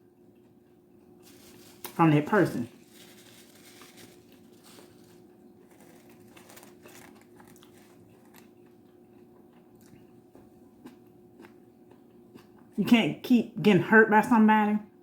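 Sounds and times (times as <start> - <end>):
steady low hum: 0.0 - 14.2
chewing mouth sounds: 4.2 - 12.8.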